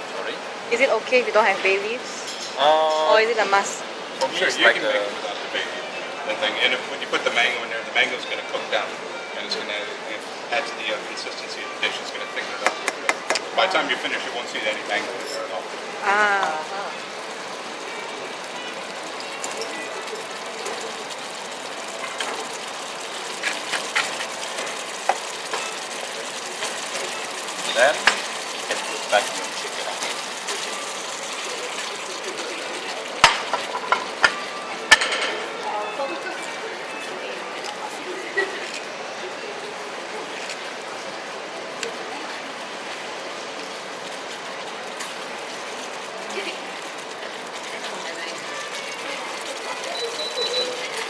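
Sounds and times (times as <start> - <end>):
sauce sizzling in a pan: 13.6 - 36.4, 42.8 - 51.0.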